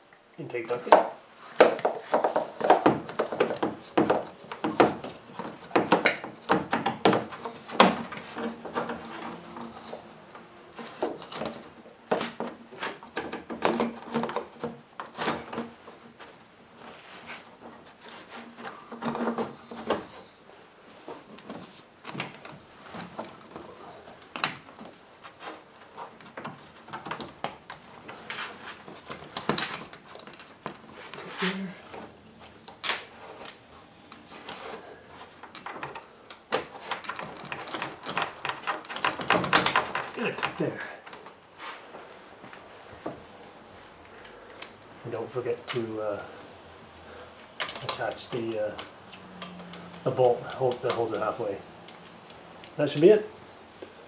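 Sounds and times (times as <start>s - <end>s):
plastic parts knocking and clicking: 0.9s - 20.2s, 21.0s - 31.2s, 31.8s - 41.4s
plastic parts scraping: 1.4s - 54.0s.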